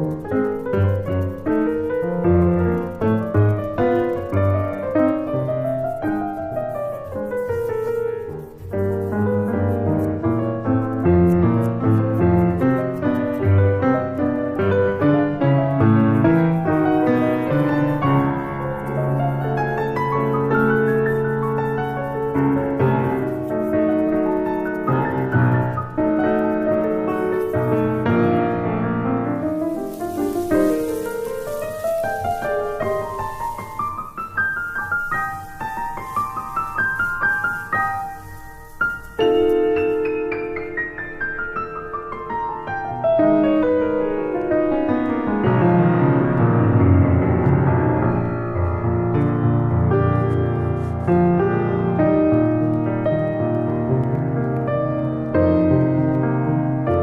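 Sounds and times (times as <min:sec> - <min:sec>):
piano music: 0:00.0 - 0:57.0.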